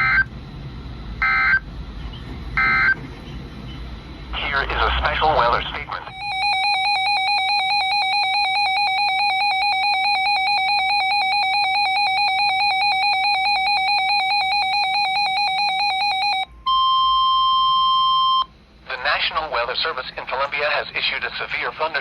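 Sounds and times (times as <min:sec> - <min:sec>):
steady alarm tone: 0:06.0 - 0:18.5
rapid pulsed electronic beeping: 0:06.1 - 0:16.5.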